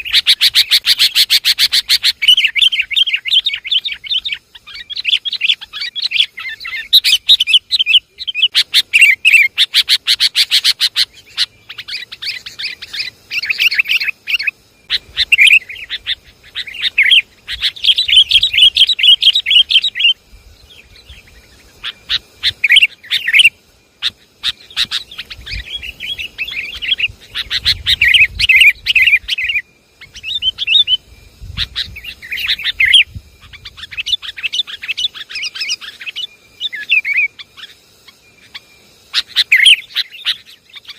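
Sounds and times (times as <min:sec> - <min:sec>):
bulbuls chattering calls: 0:00.0 - 0:20.2, 0:20.8 - 0:40.9.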